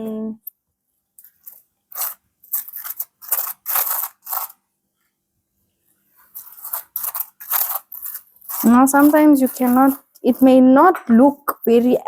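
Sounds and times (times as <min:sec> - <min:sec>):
knife scraping on bread: 0:01.4 - 0:04.6, 0:06.2 - 0:10.4.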